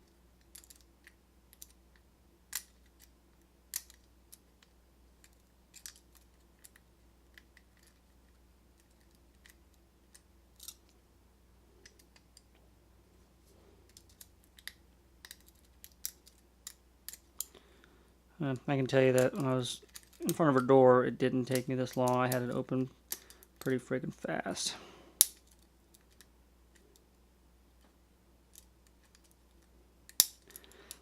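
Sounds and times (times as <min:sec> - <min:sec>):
metallic clicks of lock picking: 0:03.7 - 0:04.1, 0:30.1 - 0:31.0.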